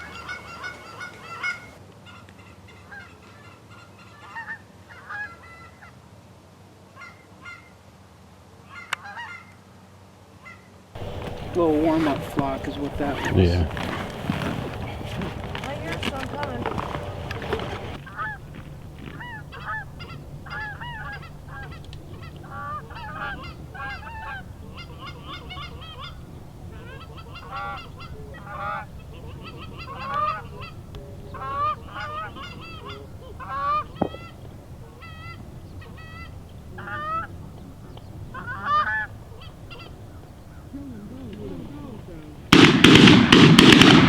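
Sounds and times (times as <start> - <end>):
geese honking: 0.0 - 5.9, 8.7 - 9.5, 10.4 - 44.0
low steady rumble: 11.0 - 44.0.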